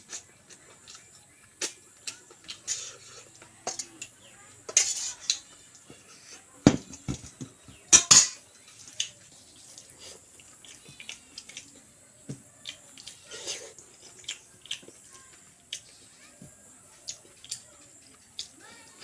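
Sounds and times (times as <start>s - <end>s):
plate clinks and knocks: 7.9s - 8.4s.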